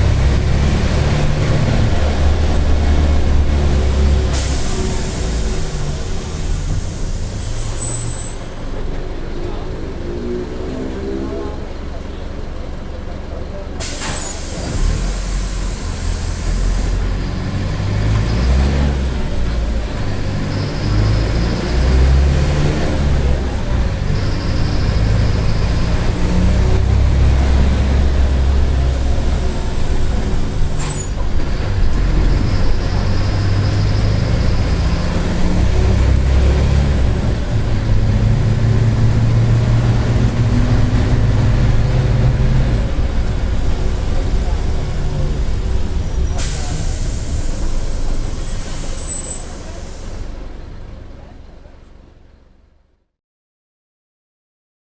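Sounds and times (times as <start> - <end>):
bus diesel engine under load: 0.0 - 53.1
air brake hiss: 4.2 - 5.8, 13.8 - 17.0, 30.8 - 31.2, 46.2 - 50.4.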